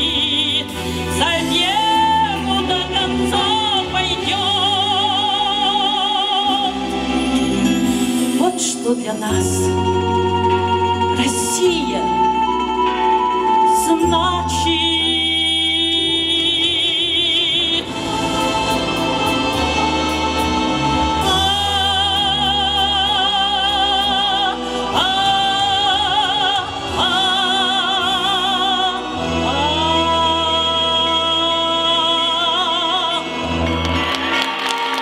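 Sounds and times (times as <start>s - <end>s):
instrumental accompaniment: 0.0s - 35.0s
woman singing with vibrato: 0.0s - 35.0s.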